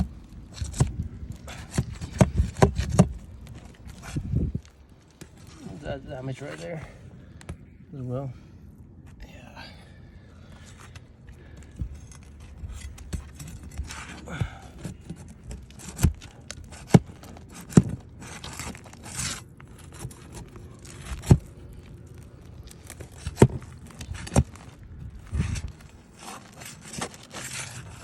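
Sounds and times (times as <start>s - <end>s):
shingles scraping and rubbing: 0.0s - 7.6s, 10.4s - 28.0s.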